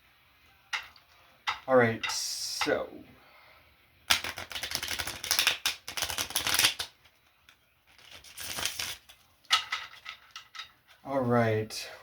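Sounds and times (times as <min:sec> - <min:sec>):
card snap: 0:04.1 - 0:07.0
cards being shuffled: 0:04.1 - 0:09.2.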